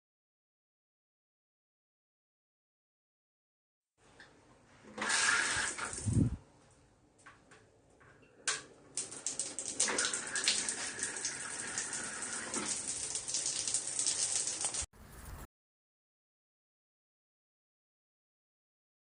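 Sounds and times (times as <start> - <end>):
shower water spraying: 5.0 - 6.4, 9.0 - 15.5.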